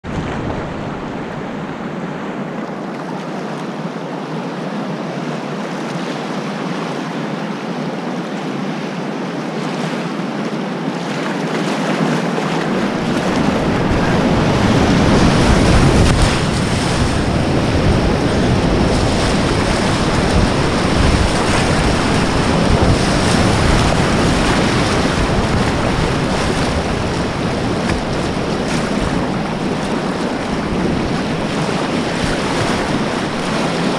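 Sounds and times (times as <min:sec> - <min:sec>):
river rapid whitewater roar: 0:00.0 - 0:33.9
deep rumble: 0:12.7 - 0:33.9.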